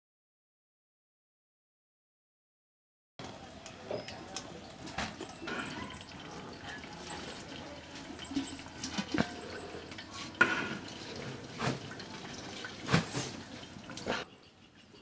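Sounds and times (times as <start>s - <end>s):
gravy bubbling in a pot: 3.2s - 15.0s.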